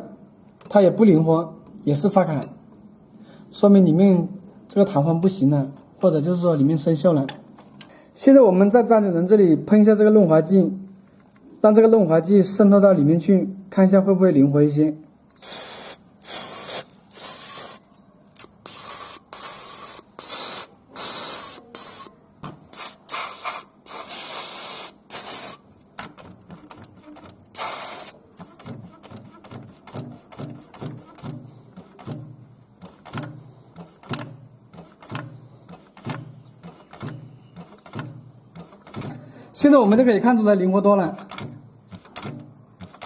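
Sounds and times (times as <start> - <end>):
aerosol spray hissing bursts: 15.4 - 25.6, 27.5 - 28.2
tensioner arm clunking: 28.4 - 39.2, 41.2 - 43.0.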